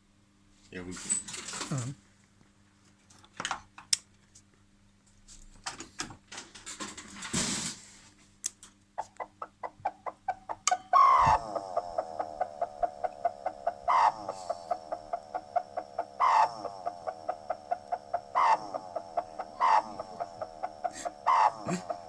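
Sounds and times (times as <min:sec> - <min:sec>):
regular ticking: 0:09.5 - 0:22.0
welding machine clucking: 0:10.1 - 0:22.0
warbling squeal: 0:10.7 - 0:22.0.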